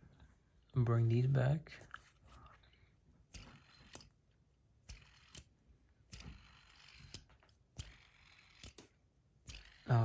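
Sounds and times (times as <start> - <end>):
metal fidget spinners clicking: 4.9 - 5.5, 6.1 - 10.0.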